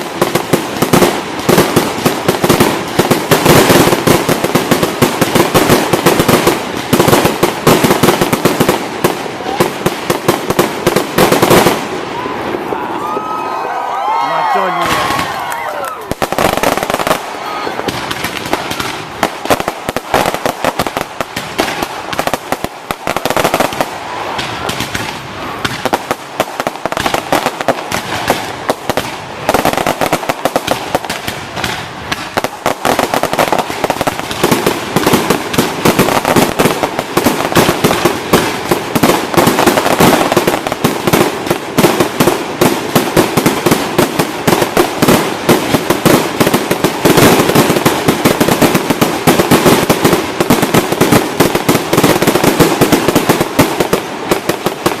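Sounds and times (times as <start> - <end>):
fireworks crackling and popping: 0.0 - 55.0.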